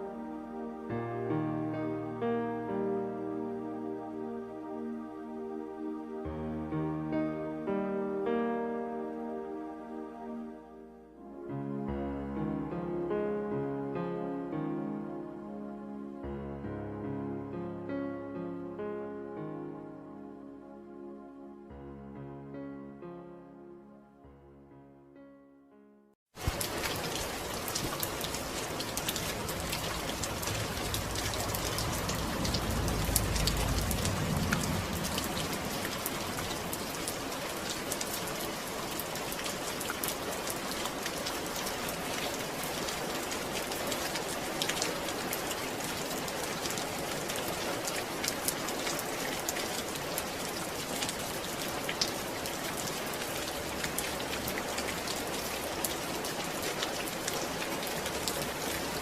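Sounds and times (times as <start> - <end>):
steady rain falling: 0.0 - 11.5, 26.3 - 59.0
low rumble: 29.6 - 36.6.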